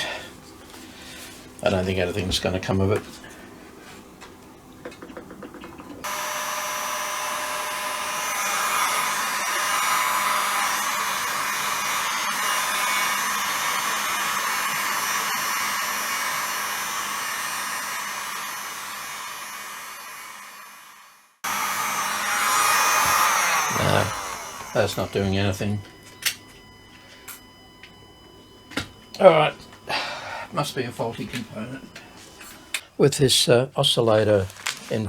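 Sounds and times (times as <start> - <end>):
hot-air blower running: 6.0 - 27.9, 28.7 - 32.8.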